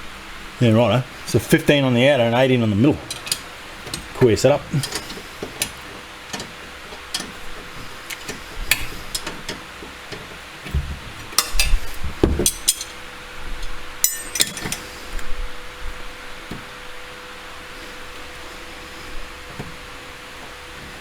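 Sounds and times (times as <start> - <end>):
metal hand tools clinking: 3.0 - 6.5, 12.4 - 13.0, 14.0 - 14.9.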